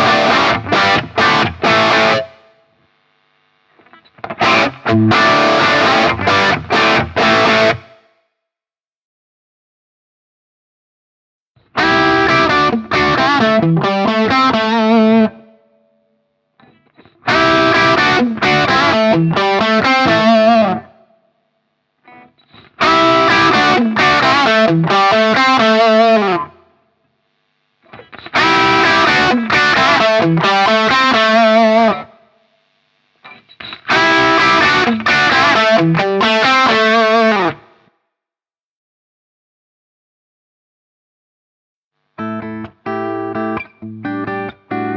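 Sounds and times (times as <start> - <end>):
overdriven electric guitar chords: 0.0 - 8.2, 11.6 - 16.0, 16.6 - 21.3, 22.1 - 26.8, 27.4 - 37.9, 42.2 - 44.9.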